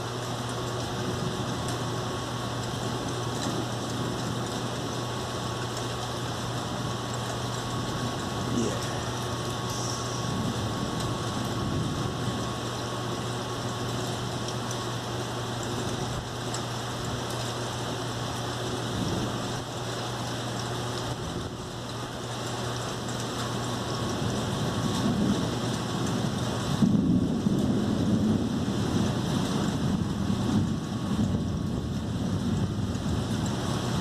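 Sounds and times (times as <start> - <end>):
steady rain: 0.0 - 34.0
thunder rumble: 6.0 - 19.7, 24.0 - 34.0
low hum: 6.8 - 12.6.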